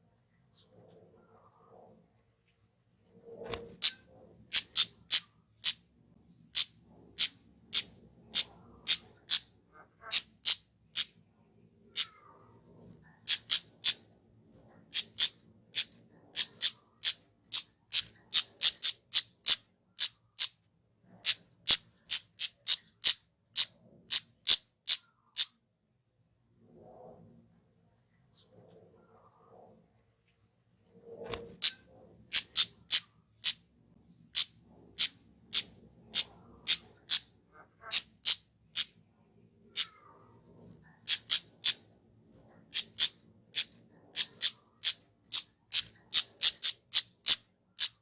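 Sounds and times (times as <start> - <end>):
bird calling high-pitched notes: 4.6 - 5.8, 32.4 - 33.6, 37.9 - 38.9, 41.1 - 41.8, 42.8 - 48.0.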